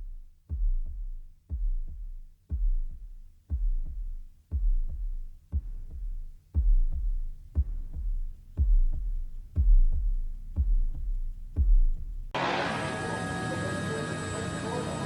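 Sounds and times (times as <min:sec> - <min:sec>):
heartbeat thumps: 0:00.0 - 0:12.4.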